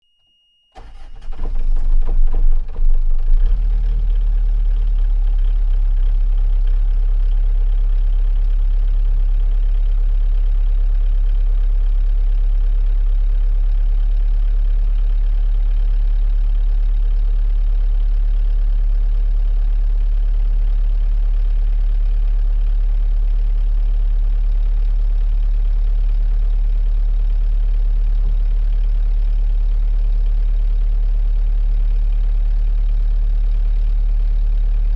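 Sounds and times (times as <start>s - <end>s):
diesel engine starting and idling: 0.8s - 6.9s.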